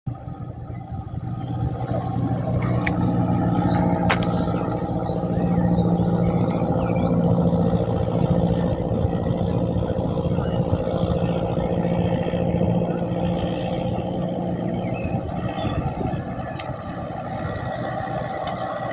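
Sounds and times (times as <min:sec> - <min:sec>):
ferry engine humming: 0:00.1 - 0:18.9.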